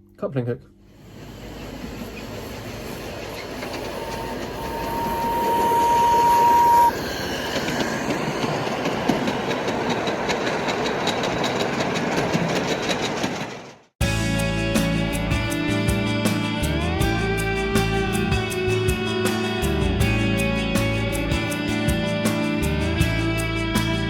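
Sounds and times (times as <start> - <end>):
steady high tone: 1.0 - 9.1
miniature train rolling on track: 1.5 - 13.9
wheels clicking over rail joints: 7.5 - 13.9.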